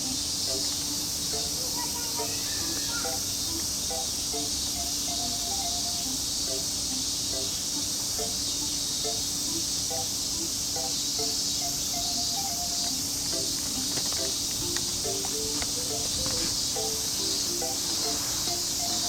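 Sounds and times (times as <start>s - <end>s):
crickets chirring: 0.0s - 19.0s
faint simple melody: 0.0s - 19.0s.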